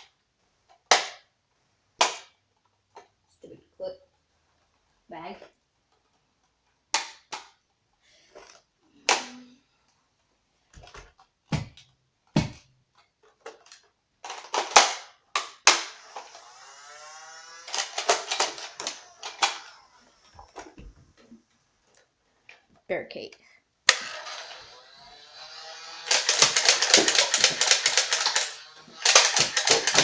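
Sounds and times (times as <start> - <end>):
toy blaster firing clicks: 14.3 - 20.7, 23.9 - 30.0
whirring tone: 15.9 - 20.7, 24.0 - 30.0.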